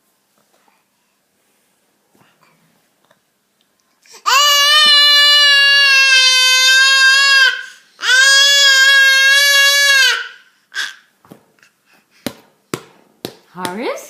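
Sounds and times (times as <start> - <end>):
baby squealing: 4.2 - 11.1.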